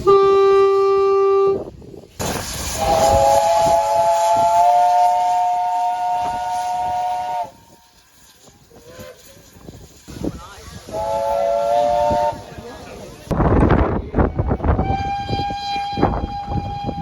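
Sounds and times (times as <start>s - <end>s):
single-note train horn blast: 0.0s - 1.6s, 14.8s - 17.0s.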